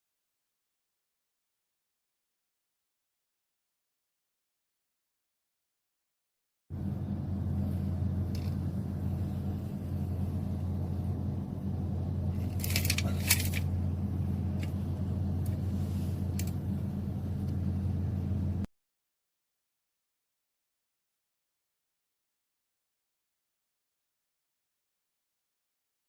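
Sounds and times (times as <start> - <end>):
low mechanical hum: 6.7 - 18.7
metallic clinks and rattles: 12.4 - 13.7.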